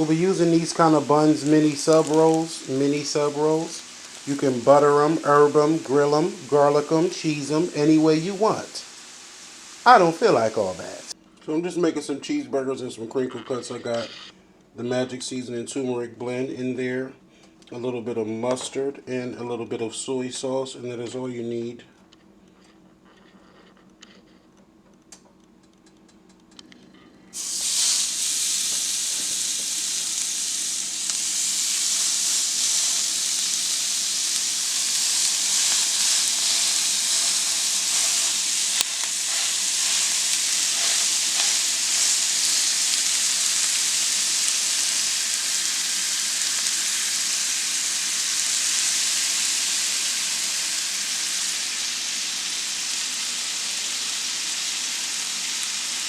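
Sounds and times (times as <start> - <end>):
meat sizzling in a frying pan: 0.0 - 11.2, 27.4 - 56.0.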